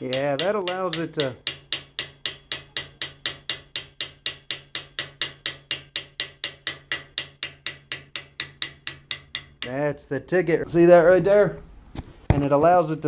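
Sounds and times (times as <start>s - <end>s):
hammer tapping chisel: 0.0s - 9.8s.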